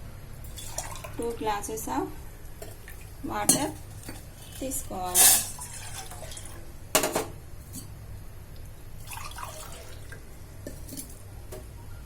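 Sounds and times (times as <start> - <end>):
water pouring into a pot: 0.5 - 1.3, 5.4 - 6.6, 9.0 - 10.3
glass clinking against a pot: 3.5 - 4.2, 5.1 - 5.9.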